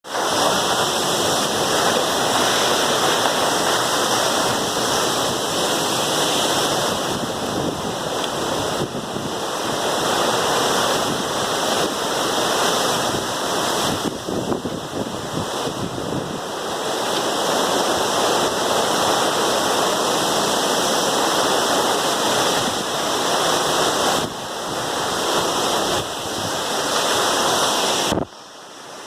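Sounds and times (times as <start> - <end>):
waterfall rushing: 0.0 - 29.0.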